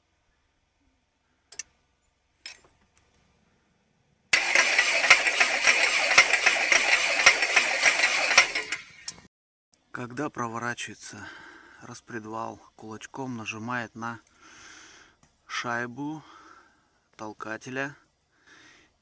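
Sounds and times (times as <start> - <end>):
starter cranking engine: 4.3 - 9.3
valvetrain clatter: 4.4 - 9.3.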